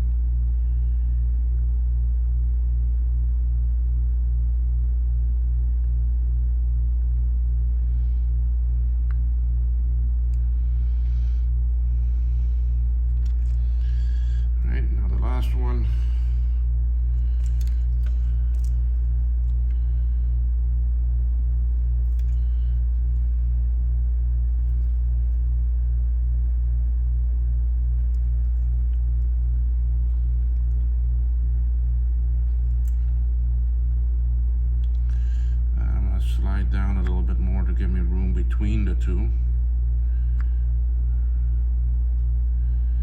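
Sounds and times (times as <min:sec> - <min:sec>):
low mains hum: 0:00.0 - 0:43.0.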